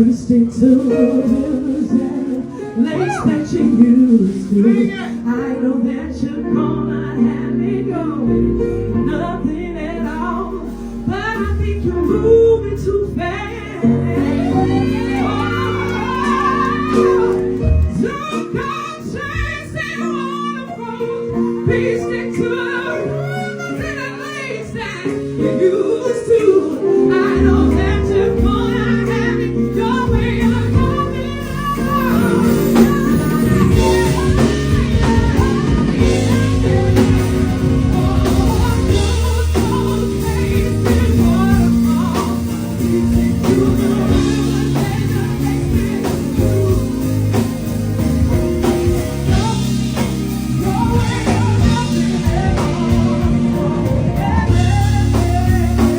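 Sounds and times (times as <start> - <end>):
drums: 0.0 - 5.6, 10.1 - 55.9
bass line: 0.0 - 19.8, 26.8 - 55.9
guitar: 0.0 - 55.9
person singing: 0.0 - 55.9.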